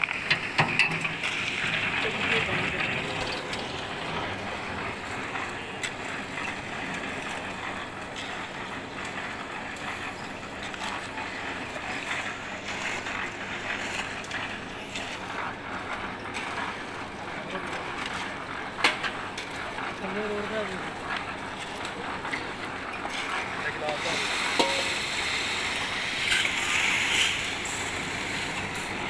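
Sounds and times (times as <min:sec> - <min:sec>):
sharp knocks and clatter: 0:00.0 - 0:08.3.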